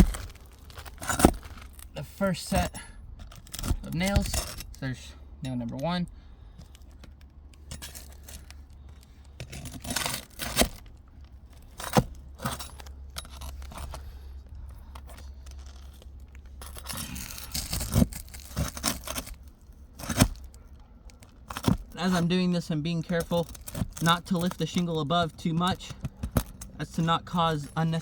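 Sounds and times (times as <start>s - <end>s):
tool scraping roof shingles: 0.0s - 4.9s, 7.6s - 11.0s, 16.6s - 28.0s.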